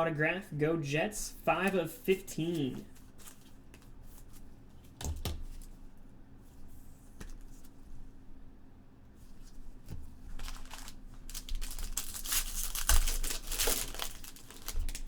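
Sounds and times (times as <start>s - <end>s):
wrappers crinkling and tearing: 10.2s - 15.0s.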